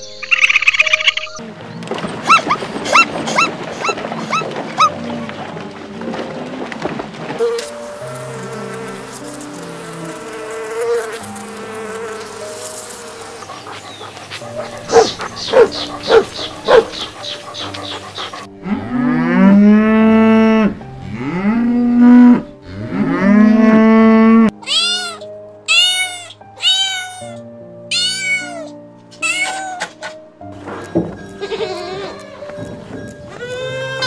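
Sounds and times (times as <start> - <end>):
cow mooing: 18.6 - 24.5
cat meowing: 24.6 - 29.8.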